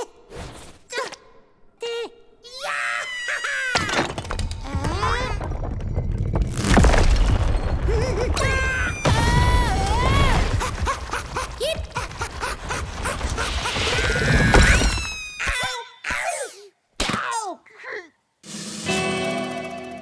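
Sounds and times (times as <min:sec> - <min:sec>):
whistle-like sliding tones: 0:13.8 - 0:15.5.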